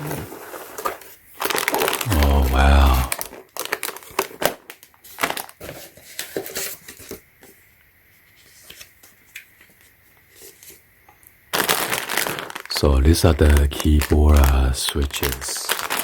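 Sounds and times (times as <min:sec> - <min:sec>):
packaging crinkling: 0:00.3 - 0:07.2, 0:11.5 - 0:16.0.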